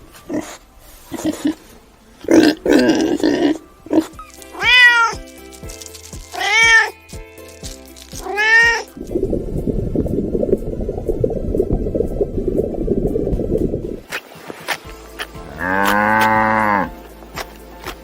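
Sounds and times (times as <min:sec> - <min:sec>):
background music with steady beat: 0:00.0 - 0:18.0
cat meowing: 0:04.0 - 0:05.3, 0:06.3 - 0:07.0, 0:08.2 - 0:08.9.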